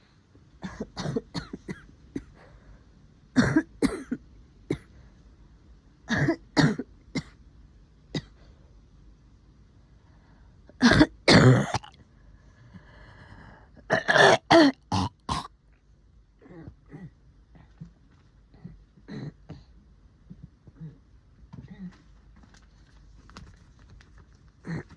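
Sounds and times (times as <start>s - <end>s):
woman coughing wetly: 0.6s - 2.3s, 3.4s - 4.9s, 6.1s - 7.3s, 10.8s - 11.9s, 13.9s - 15.5s
throat clearing: 16.4s - 17.2s, 18.6s - 19.7s, 24.7s - 24.9s.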